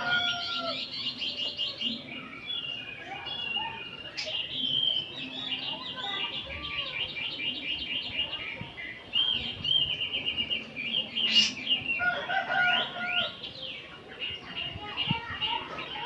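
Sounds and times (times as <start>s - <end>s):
magpie-robins singing: 0.0s - 16.0s.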